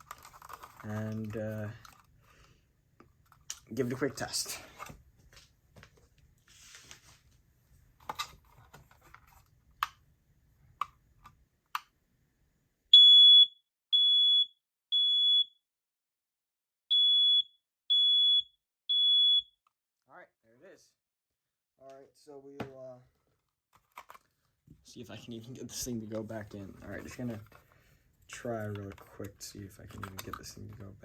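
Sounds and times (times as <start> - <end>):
smoke alarm beeps: 12.9 - 15.6, 16.9 - 19.6.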